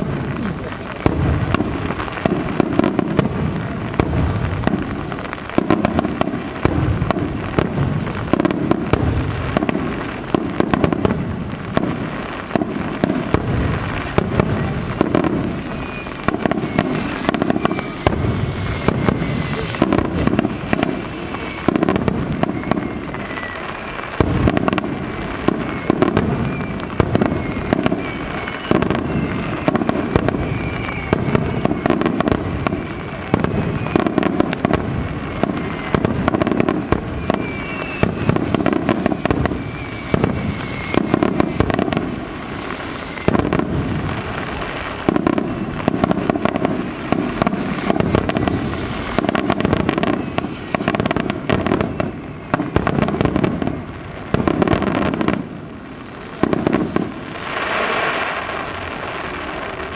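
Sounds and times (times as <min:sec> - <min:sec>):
fireworks booming and crackling: 0:00.0 - 0:59.9
whistling rising shells: 0:15.6 - 0:20.1, 0:22.4 - 0:23.9, 0:25.4 - 0:32.4, 0:36.6 - 0:42.1.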